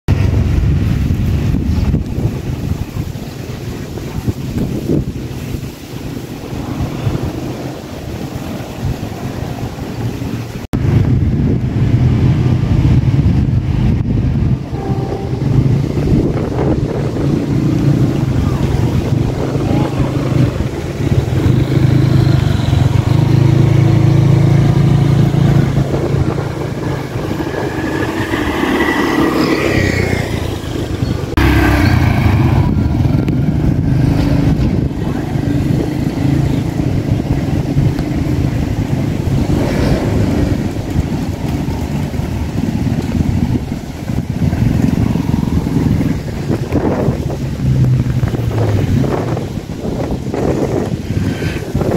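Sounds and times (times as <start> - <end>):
motorcycle engines running: 0.1 - 51.9
engine note rising: 6.1 - 43.6.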